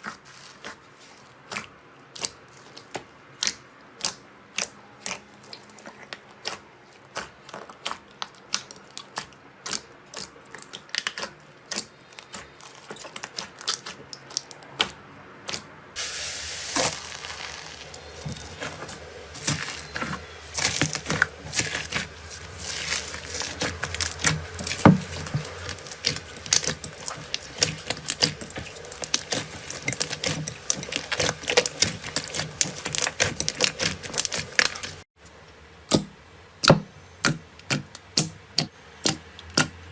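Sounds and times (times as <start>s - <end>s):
slime squished by hand: 0.0s - 35.0s
steady hiss: 16.0s - 19.3s.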